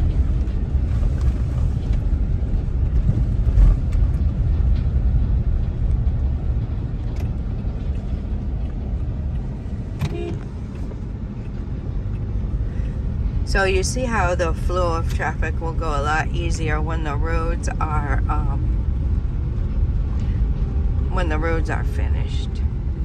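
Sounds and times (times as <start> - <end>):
car road noise rumble: 0.0 - 23.0.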